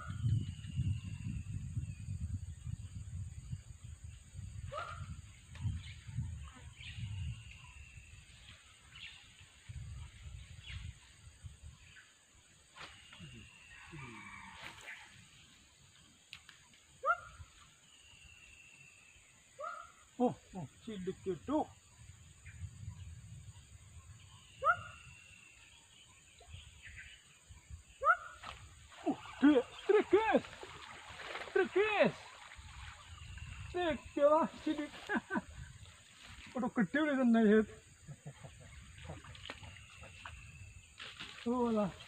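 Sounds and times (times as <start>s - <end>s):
wind gusts on microphone: 0.0s - 12.0s, 20.6s - 25.3s, 26.4s - 36.6s
faint bird chirps: 0.0s - 15.2s, 37.5s - 41.8s.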